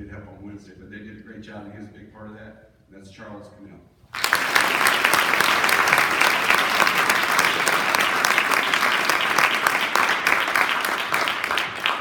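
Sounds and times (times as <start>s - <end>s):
audience applauding: 4.2s - 12.0s.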